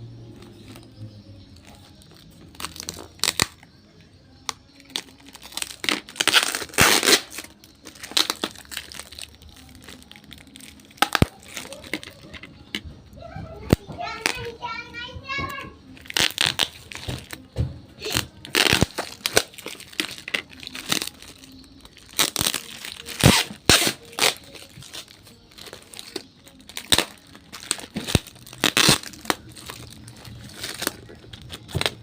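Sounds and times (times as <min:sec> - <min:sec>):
packaging crinkling and tearing: 0:01.6 - 0:03.7, 0:04.8 - 0:12.5, 0:16.0 - 0:17.4, 0:18.0 - 0:32.0.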